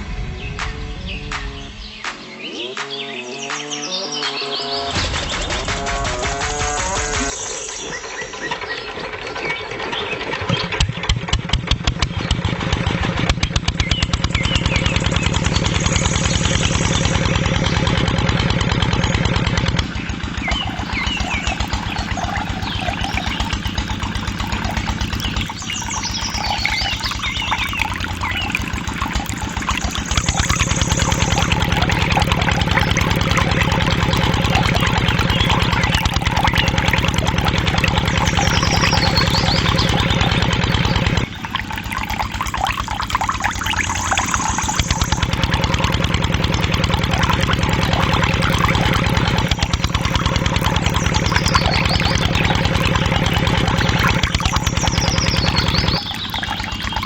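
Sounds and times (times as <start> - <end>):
small engine running: 6.4 - 41.4.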